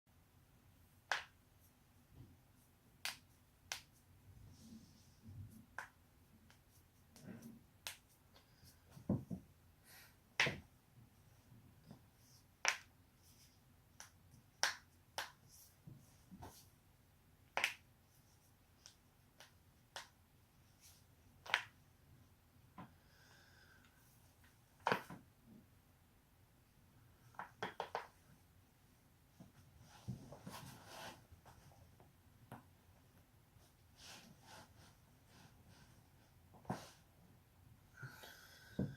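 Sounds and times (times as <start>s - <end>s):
soft rustling of movement: 27.1s - 37.4s.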